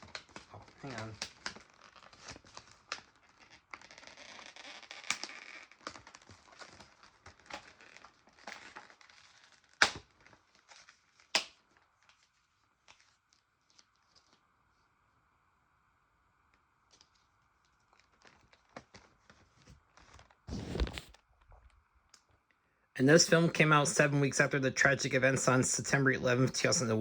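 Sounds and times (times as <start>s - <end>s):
plastic wrap tearing and crinkling: 0.0s - 14.4s, 16.9s - 21.2s.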